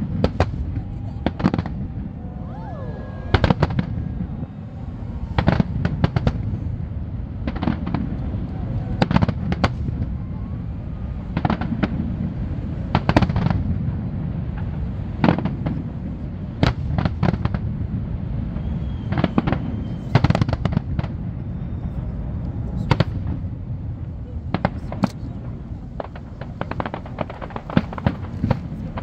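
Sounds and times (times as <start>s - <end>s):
low rumble: 0.0s - 15.2s
fireworks bangs and crackles: 0.0s - 29.0s.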